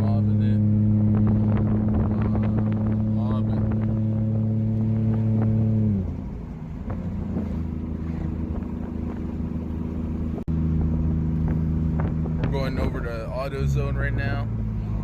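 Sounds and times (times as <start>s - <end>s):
car engine running: 0.0s - 15.0s.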